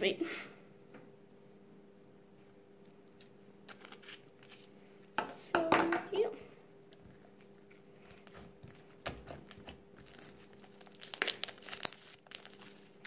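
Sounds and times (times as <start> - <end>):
slime crackling and popping: 8.1 - 13.0.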